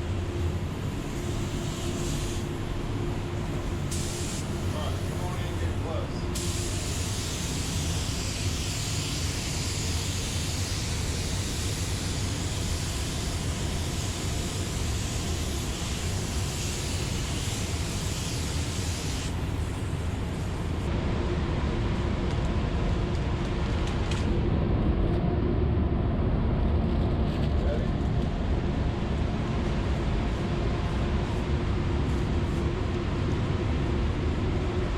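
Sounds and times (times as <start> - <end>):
low machine rumble: 0.0 - 9.1, 19.4 - 34.9
air spray gun hissing: 0.4 - 20.9.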